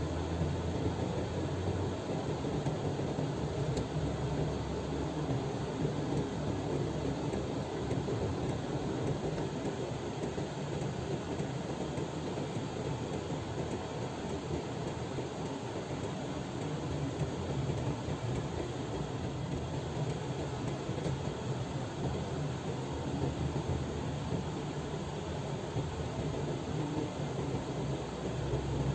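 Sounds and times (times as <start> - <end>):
vehicle driving on road: 0.0 - 28.9.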